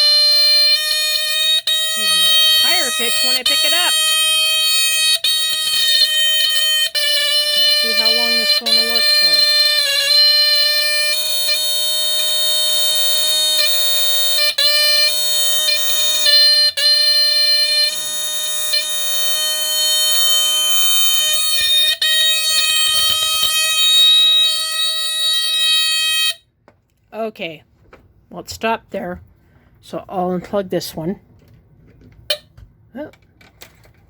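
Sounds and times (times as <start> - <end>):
smoke alarm horn: 0.0 - 26.5.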